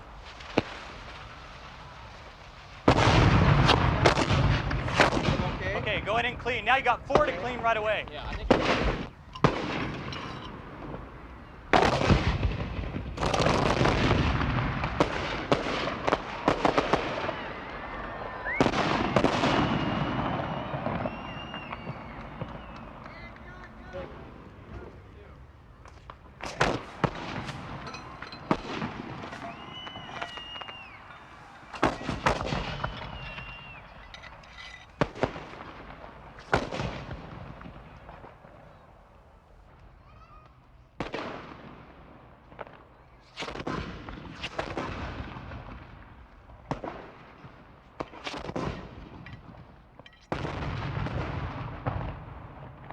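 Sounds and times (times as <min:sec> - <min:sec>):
rifle shots echoing: 0:00.0 - 0:38.7.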